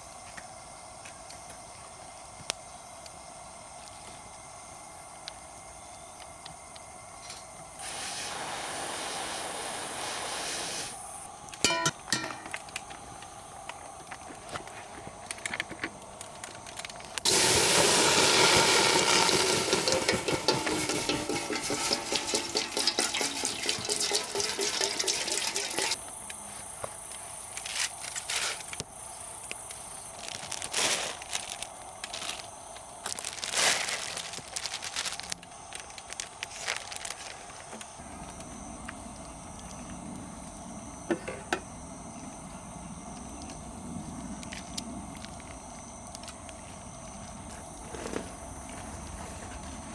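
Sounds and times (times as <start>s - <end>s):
water pouring into a pot: 17.2s - 26.0s.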